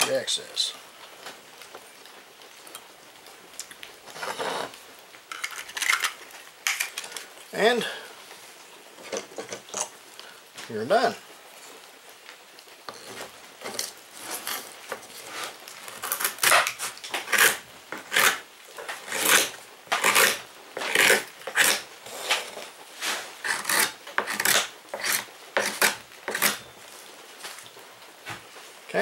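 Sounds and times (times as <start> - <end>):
rasping scraping strokes: 13.0 - 26.6.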